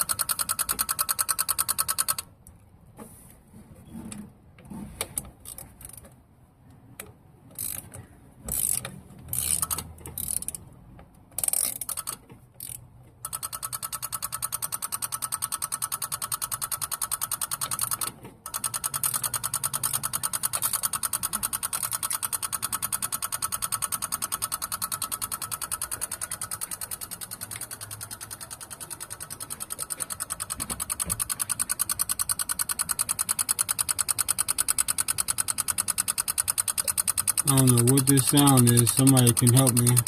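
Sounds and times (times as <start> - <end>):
rapid engine ticking: 0.0 - 2.3, 11.7 - 40.0.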